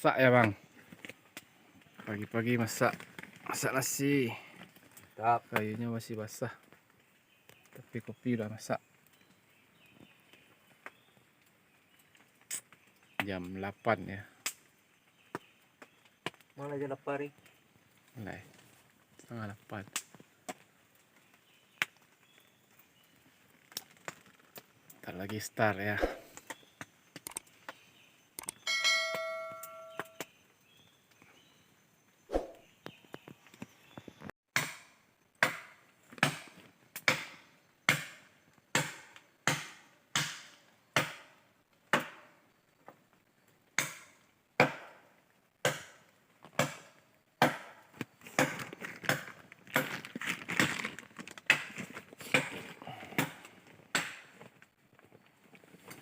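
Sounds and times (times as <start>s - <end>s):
brief ringing tone: 28.7s - 30.2s
wood chopping strikes: 34.6s - 42.4s, 43.8s - 50.0s, 51.5s - 54.4s.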